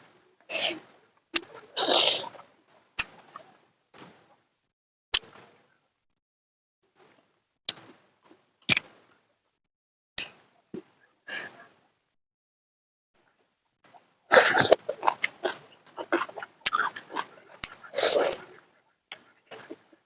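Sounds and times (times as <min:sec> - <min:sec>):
mouth smacks and clicks: 0:01.4 - 0:02.4, 0:03.0 - 0:04.2, 0:13.9 - 0:19.9
chewing and slurping: 0:13.9 - 0:20.0.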